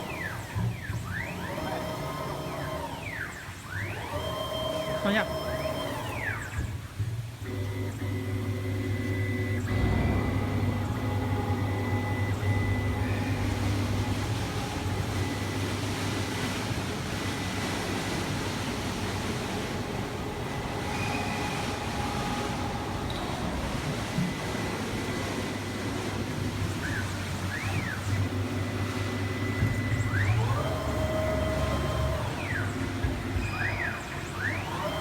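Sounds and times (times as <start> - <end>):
wood router humming: 1.2 - 6.3, 7.2 - 35.0
high whine: 8.7 - 35.0.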